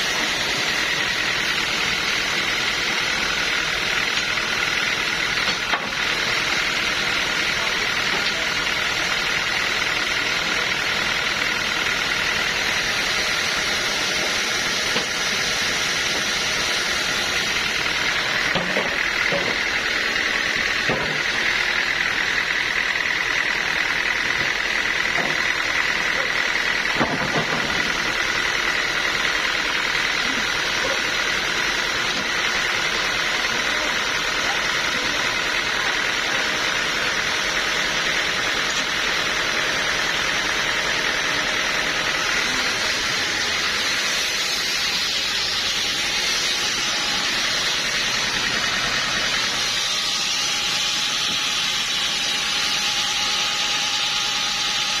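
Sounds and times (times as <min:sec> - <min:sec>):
sawmill machinery whining: 0:00.0 - 0:55.0.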